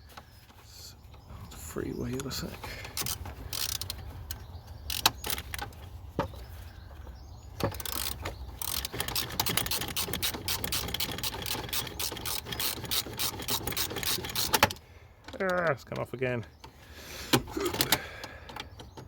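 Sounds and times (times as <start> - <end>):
socket ratchet clicking: 3.0 - 5.7, 7.6 - 14.8.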